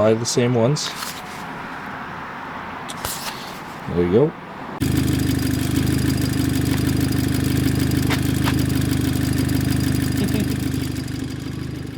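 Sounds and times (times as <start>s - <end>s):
car engine idling: 4.8s - 11.9s.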